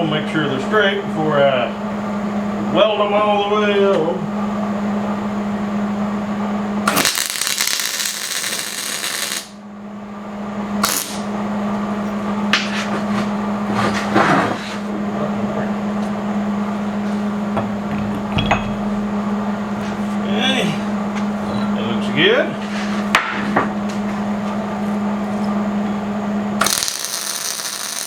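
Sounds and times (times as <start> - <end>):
electrical hum: 0.0 - 28.0
arc welder crackling: 6.9 - 9.6, 10.8 - 11.4, 26.6 - 28.0.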